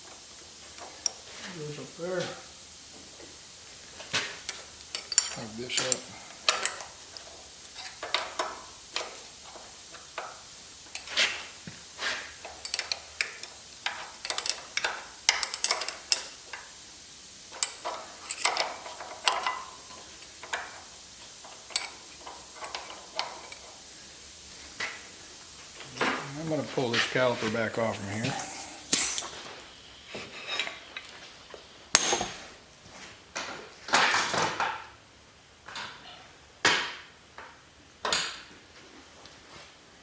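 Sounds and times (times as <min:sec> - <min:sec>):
metal parts and tools clinking: 0:04.5 - 0:09.2, 0:12.0 - 0:16.3, 0:17.5 - 0:23.8, 0:28.0 - 0:32.4.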